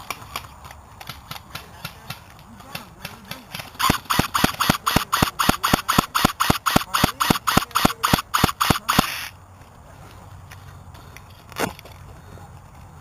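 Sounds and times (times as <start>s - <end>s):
airsoft gun firing single shots: 3.8s - 9.2s.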